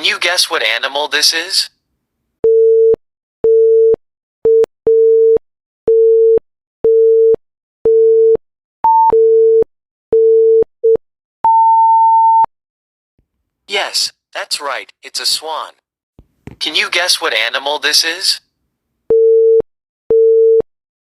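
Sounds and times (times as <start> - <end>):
electronic countdown beeps: 8.8 - 9.2.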